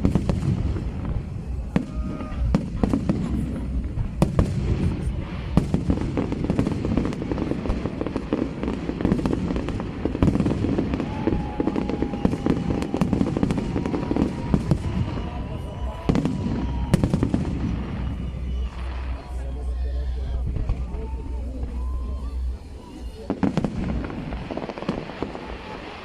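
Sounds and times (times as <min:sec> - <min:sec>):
firework bangs and crackles: 0:00.0 - 0:26.0
faint thin whistle: 0:14.6 - 0:19.9, 0:21.0 - 0:23.4.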